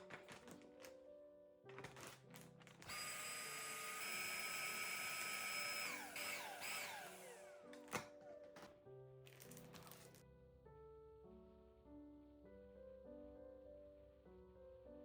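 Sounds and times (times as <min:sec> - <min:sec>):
soft background music: 0:00.0 - 0:15.0
kitchen appliance motor whining: 0:02.8 - 0:08.1.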